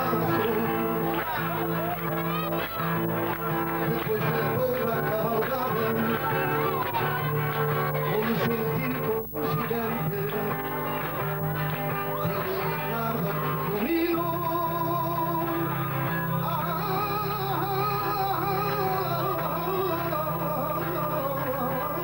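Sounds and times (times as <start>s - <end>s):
guitar accompaniment: 0.0s - 22.0s
person singing ornamented lines: 0.0s - 22.0s.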